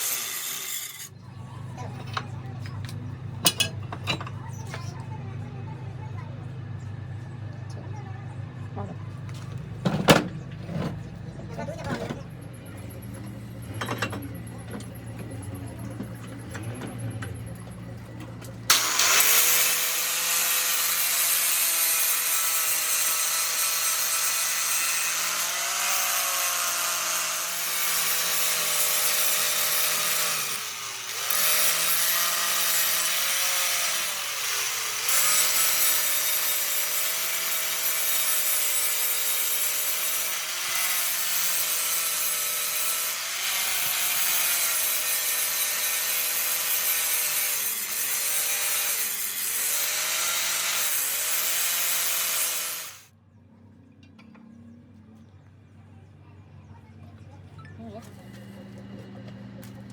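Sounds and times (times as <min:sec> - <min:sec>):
power tool grinding metal: 0:00.0 - 0:01.2, 0:18.7 - 0:53.1.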